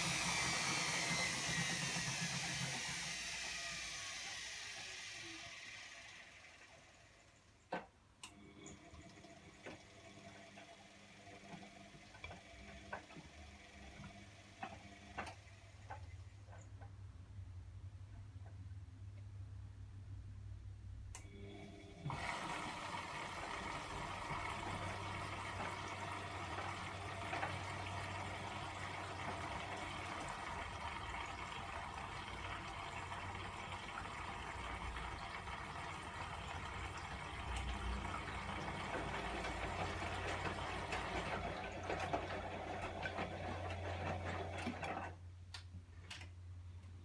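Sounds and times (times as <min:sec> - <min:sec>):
water hissing into washing machine: 0:00.0 - 0:07.4, 0:21.3 - 0:44.9.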